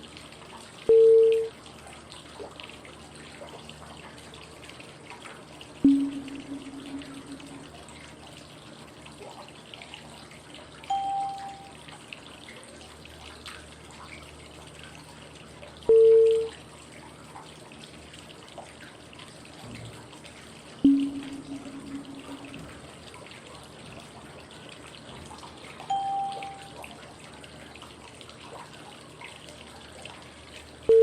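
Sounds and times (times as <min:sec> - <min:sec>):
flowing water: 0:00.0 - 0:31.0
short cue tones: 0:25.9 - 0:26.8.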